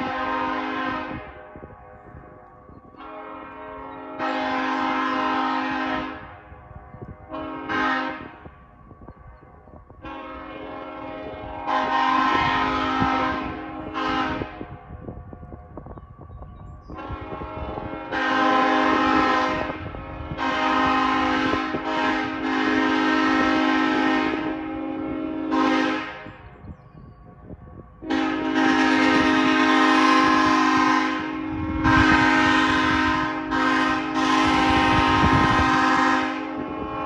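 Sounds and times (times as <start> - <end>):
air horn chord blasts: 0.0 - 1.5, 3.0 - 6.4, 7.3 - 8.5, 10.0 - 14.7, 17.0 - 26.5, 28.0 - 37.0.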